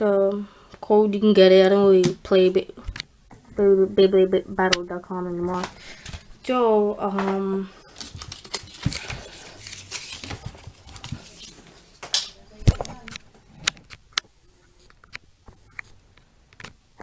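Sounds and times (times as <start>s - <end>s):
plastic toy packaging rustling: 7.8s - 13.9s.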